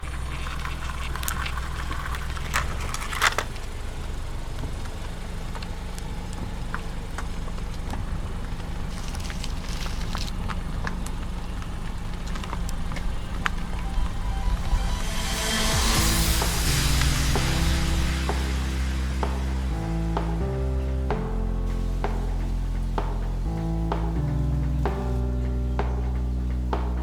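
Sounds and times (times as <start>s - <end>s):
small clicks and crackles: 0.1s - 13.8s
low engine-like drone: 9.2s - 27.0s.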